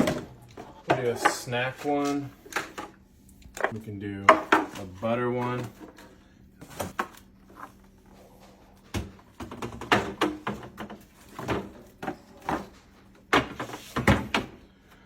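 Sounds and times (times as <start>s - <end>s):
plastic bins knocking in refrigerator: 0.0s - 1.6s, 8.9s - 14.6s
refrigerator hum: 0.0s - 15.0s.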